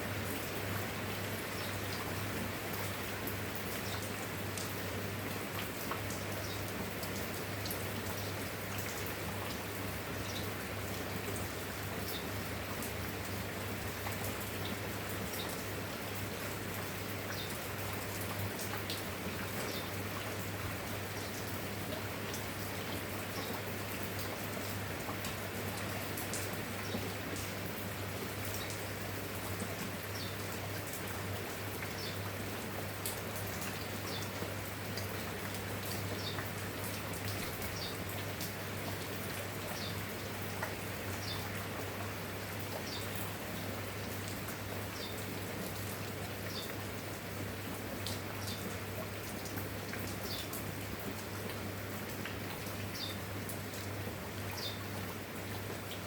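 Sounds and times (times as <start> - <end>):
steady rain: 0.0 - 56.0
raindrops pattering: 0.2 - 56.0.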